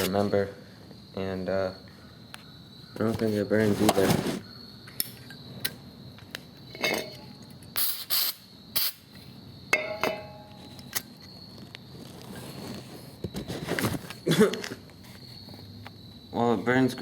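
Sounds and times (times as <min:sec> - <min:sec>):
metal clink: 0:06.7 - 0:07.3, 0:09.7 - 0:10.6.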